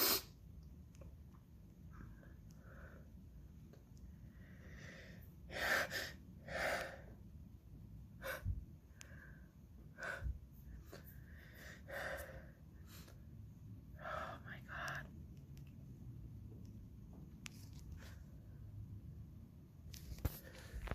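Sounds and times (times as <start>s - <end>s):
sniffs: 0.0s - 0.3s.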